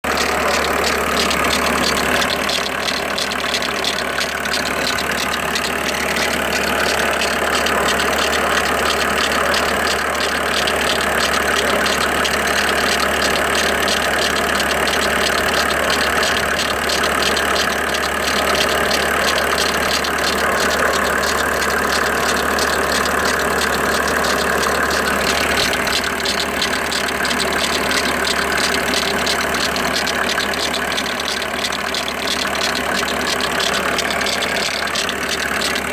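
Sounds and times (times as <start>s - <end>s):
engine idling with fast ticking: 0.0s - 35.9s.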